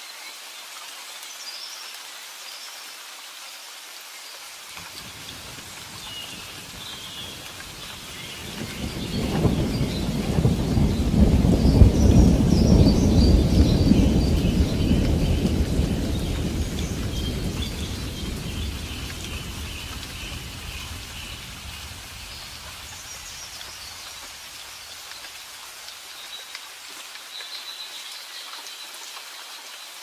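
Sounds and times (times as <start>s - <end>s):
steady rain falling: 0.0s - 30.0s
low rumble of thunder: 4.8s - 24.6s.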